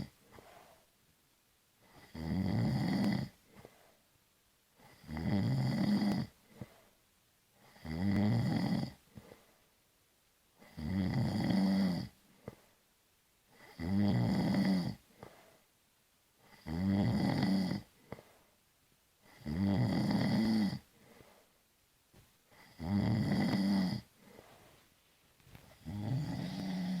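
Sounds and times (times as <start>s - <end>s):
person snoring: 1.8s - 3.8s, 4.8s - 6.8s, 7.6s - 9.4s, 10.6s - 12.1s, 13.6s - 15.4s, 16.5s - 18.3s, 19.3s - 21.2s, 22.6s - 24.6s, 25.7s - 27.0s.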